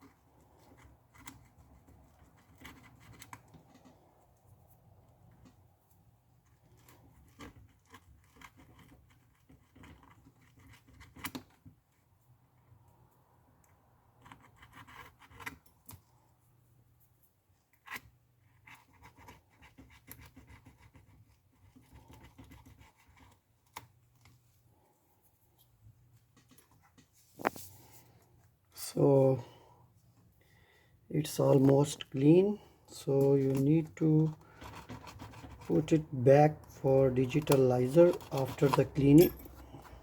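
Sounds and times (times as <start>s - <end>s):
tool scratching and scraping: 31.4s - 40.0s.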